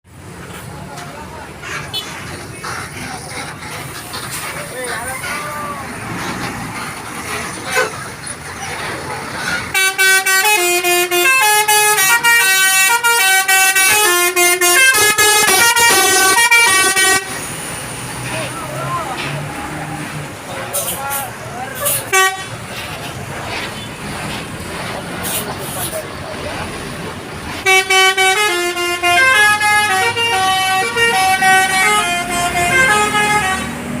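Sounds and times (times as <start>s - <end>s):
bus multi-tone air horn tune: 9.7s - 17.5s, 21.8s - 22.7s, 27.6s - 34.0s.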